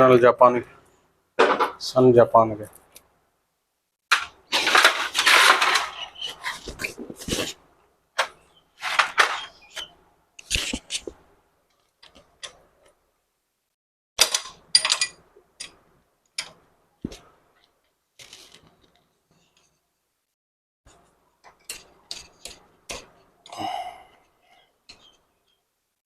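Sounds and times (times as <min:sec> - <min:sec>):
metallic tool clinks and rattles: 0:14.2 - 0:15.2.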